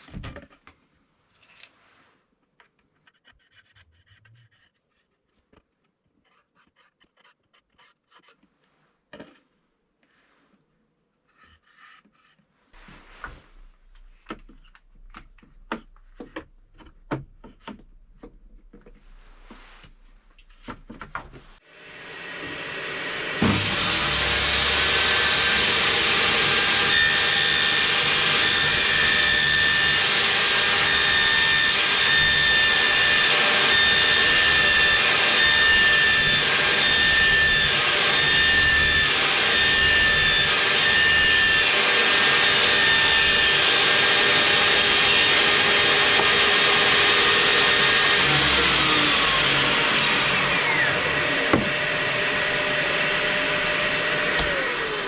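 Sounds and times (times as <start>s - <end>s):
electric power tool whining: 21.7s - 55.0s.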